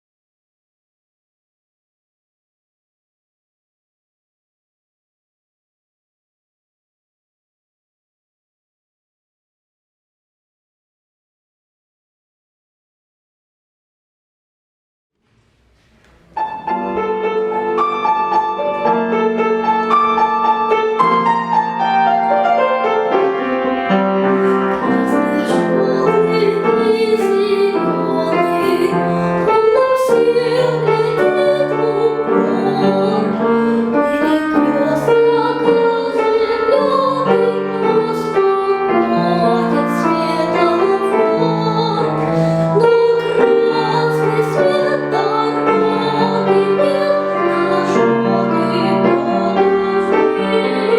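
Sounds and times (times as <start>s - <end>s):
piano accompaniment: 15.6s - 50.9s
girl singing: 24.3s - 50.9s.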